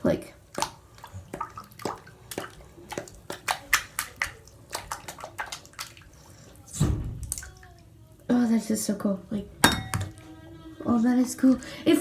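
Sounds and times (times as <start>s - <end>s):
bath water splashing: 0.4s - 8.0s.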